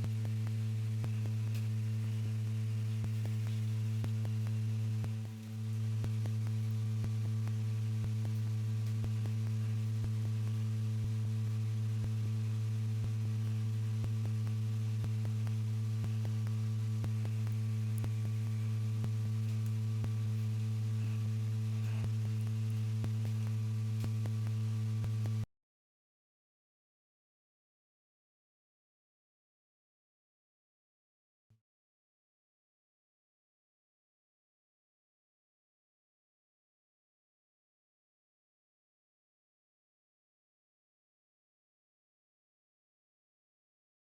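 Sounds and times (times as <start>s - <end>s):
electrical hum: 0.0s - 25.5s.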